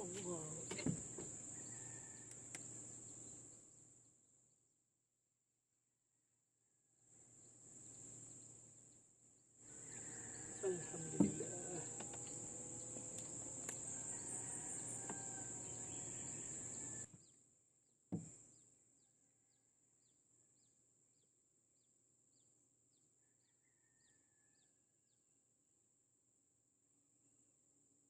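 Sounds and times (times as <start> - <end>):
insects droning: 0.0 - 4.3, 7.2 - 17.3.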